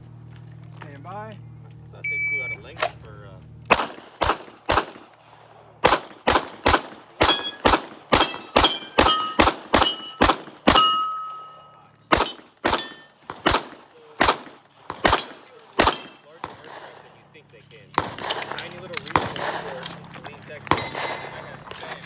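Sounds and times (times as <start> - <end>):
pistol shots: 3.7 - 17.3, 17.9 - 20.0, 20.6 - 21.8
ringing metallic target hits: 7.2 - 13.2, 15.1 - 16.3.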